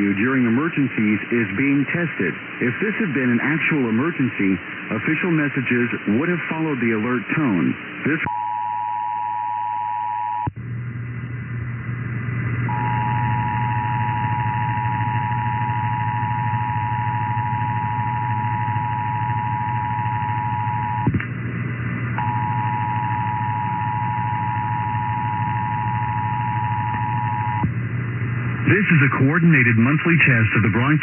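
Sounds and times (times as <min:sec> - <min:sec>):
radio hiss: 0:00.0 - 0:08.3, 0:22.3 - 0:31.0
low hum: 0:08.3 - 0:30.8.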